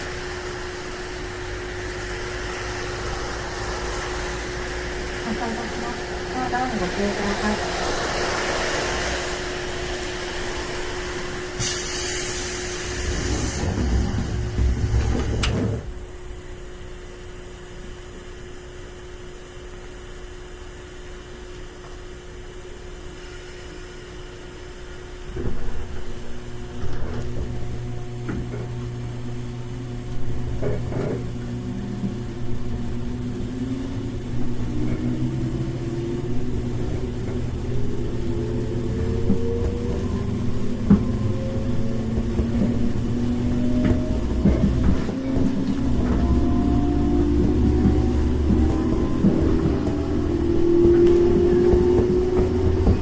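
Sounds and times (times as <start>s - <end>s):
traction motor whine rising: 0.0s - 16.4s, 26.2s - 53.0s
train starting with low rumble: 0.0s - 53.0s
steady electric hum: 12.6s - 39.2s.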